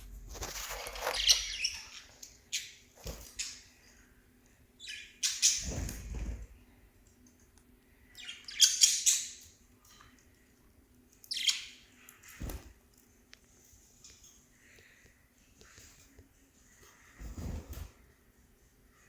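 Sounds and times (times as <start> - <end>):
parrots chirping and squawking: 0.5 - 3.8, 4.8 - 5.8, 8.2 - 9.5, 11.2 - 12.4.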